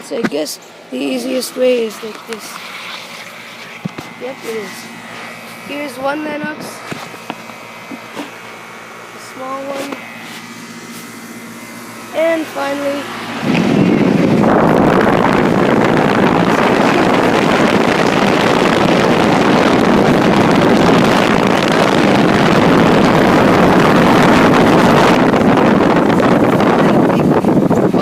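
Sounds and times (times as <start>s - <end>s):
air conditioner unit running: 0.0s - 28.0s
wind buffeting microphone: 11.4s - 28.0s.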